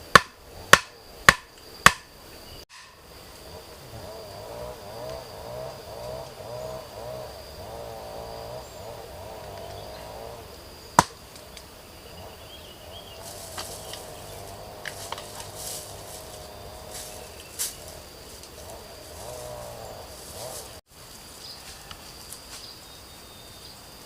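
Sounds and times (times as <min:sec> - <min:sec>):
high insect drone: 0:00.0 - 0:24.0
sharp knock: 0:02.7 - 0:03.0.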